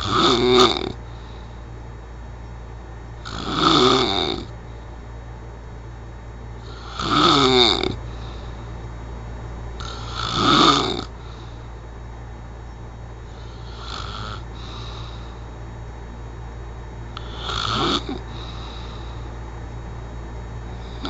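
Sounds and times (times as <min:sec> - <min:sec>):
person snoring: 0:00.0 - 0:01.0, 0:03.2 - 0:04.5, 0:06.6 - 0:08.5, 0:09.8 - 0:11.6, 0:13.3 - 0:15.4, 0:17.2 - 0:19.2, 0:20.7 - 0:21.0
steady low hum: 0:00.0 - 0:21.0.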